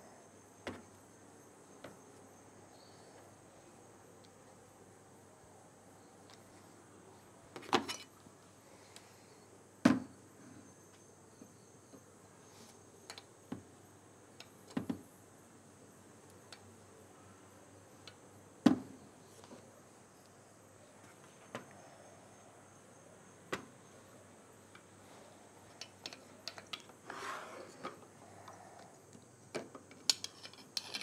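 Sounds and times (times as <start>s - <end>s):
crickets chirping: 0.0s - 31.0s
small parts clicking and knocking: 25.6s - 27.0s, 27.8s - 31.0s.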